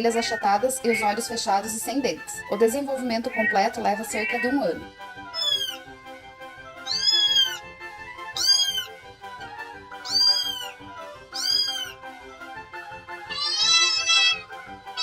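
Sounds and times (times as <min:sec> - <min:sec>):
background music with steady beat: 0:00.0 - 0:15.0
cat meowing: 0:05.3 - 0:05.8, 0:06.8 - 0:07.7, 0:08.3 - 0:09.0, 0:10.0 - 0:12.0, 0:13.3 - 0:14.4.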